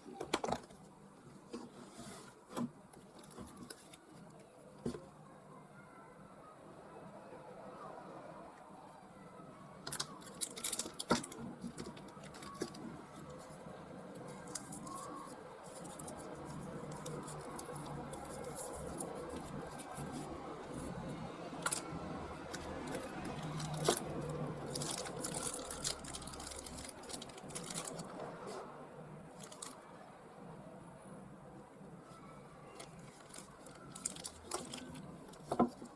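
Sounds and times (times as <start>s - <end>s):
hands rustling small objects: 9.9s - 28.6s, 29.3s - 29.8s, 32.8s - 35.9s.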